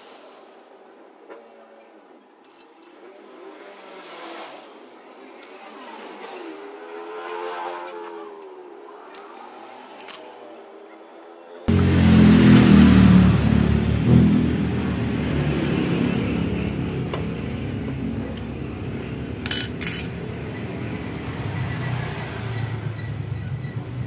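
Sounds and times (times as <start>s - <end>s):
vehicle engine running: 11.7s - 24.0s.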